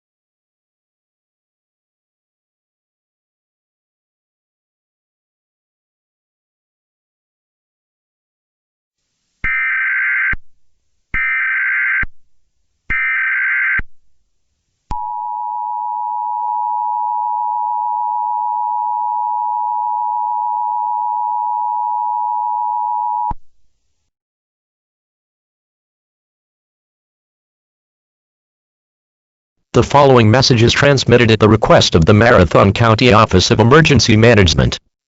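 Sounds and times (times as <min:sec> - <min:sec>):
steady attention tone: 0:14.9 - 0:23.4.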